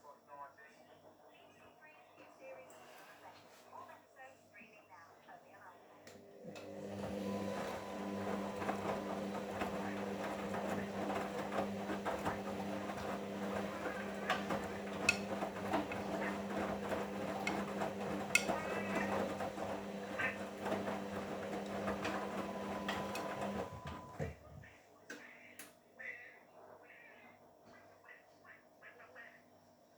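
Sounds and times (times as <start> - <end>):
washing machine motor hum: 6.1 - 24.8
clicks and knocks of tumbling load: 7.0 - 24.4.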